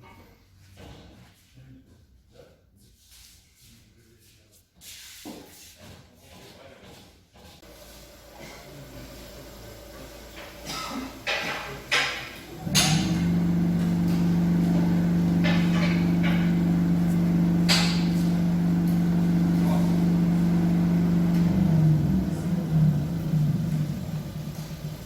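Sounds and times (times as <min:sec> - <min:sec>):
vibration test stand humming: 0:07.6 - 0:25.0
car rattling and knocking: 0:15.1 - 0:18.6.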